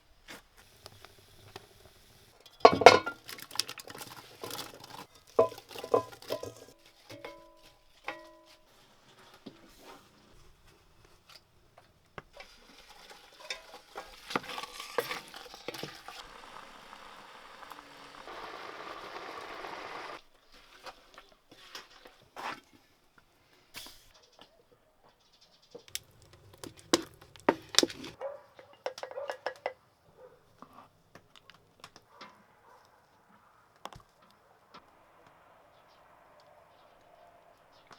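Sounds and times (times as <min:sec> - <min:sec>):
pots and dishes clinking: 0:02.4 - 0:08.7, 0:12.4 - 0:18.2, 0:26.0 - 0:29.8
steady hiss: 0:15.7 - 0:20.2.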